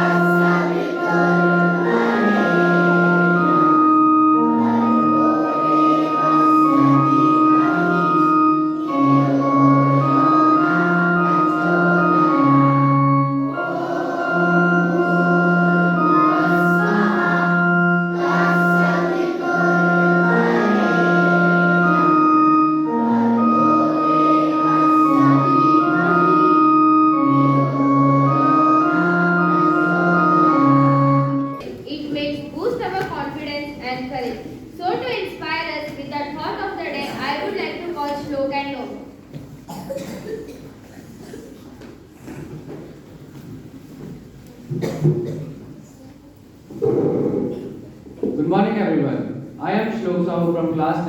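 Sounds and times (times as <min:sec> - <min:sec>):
organ-like keyboard chords: 0:00.0 - 0:31.8.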